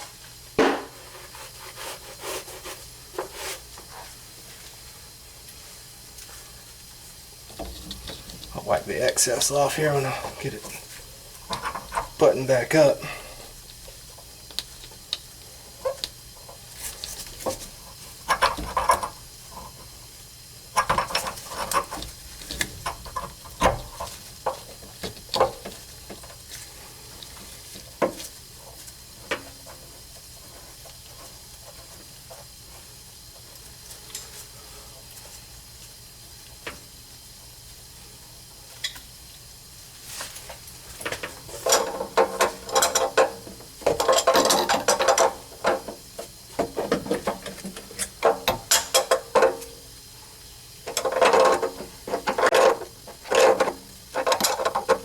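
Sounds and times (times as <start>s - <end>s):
metal plumbing parts clicking: 41.0s - 49.7s, 50.8s - 55.0s.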